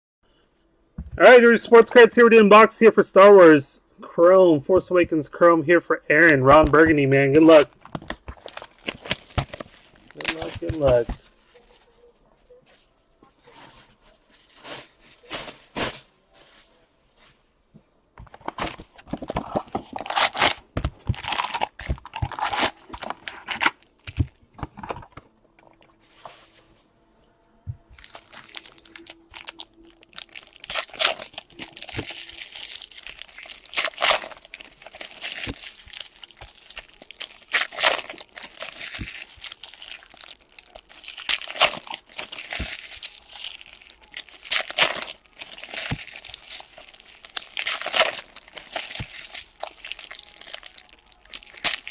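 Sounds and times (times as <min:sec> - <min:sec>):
plastic and foil wrappers crinkling: 0:06.2 - 0:16.2, 0:18.3 - 0:25.2, 0:27.9 - 0:51.9.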